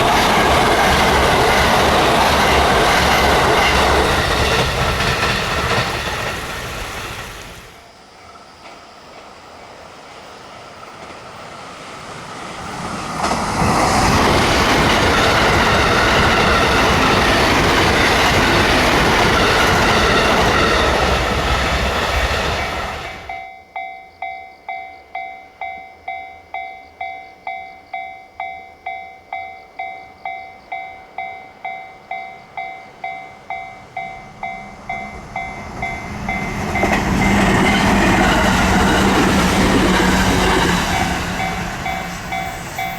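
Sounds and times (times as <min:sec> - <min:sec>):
train wheels rushing on rails: 0:00.0 - 0:23.4, 0:30.6 - 0:42.9
crossing warning bell clanging: 0:23.1 - 0:42.9.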